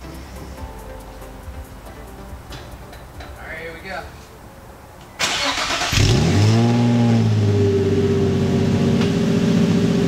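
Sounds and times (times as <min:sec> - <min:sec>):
car engine revving and idling: 0:05.6 - 0:10.0.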